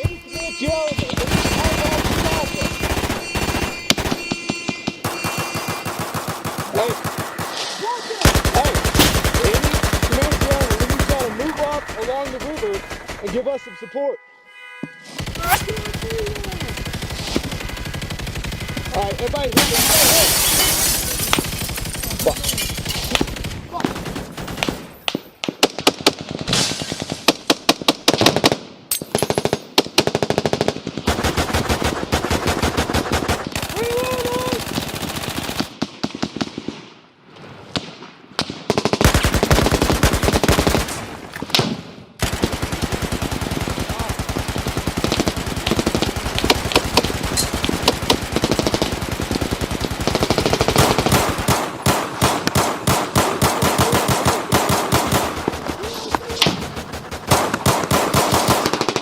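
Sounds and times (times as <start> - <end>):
machine-gun bursts: 1.2 - 4.4, 5.0 - 13.5, 15.2 - 24.9, 30.2 - 35.7, 38.7 - 41.2, 42.2 - 59.0.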